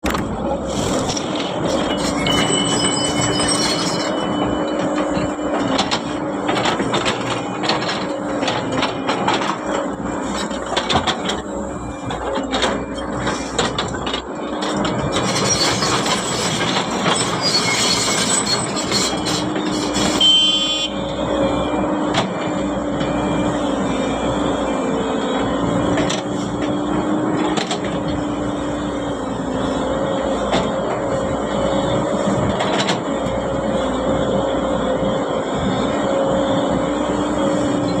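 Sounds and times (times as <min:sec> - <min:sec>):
excavator engine and hydraulics hum: 0:00.0 - 0:38.0.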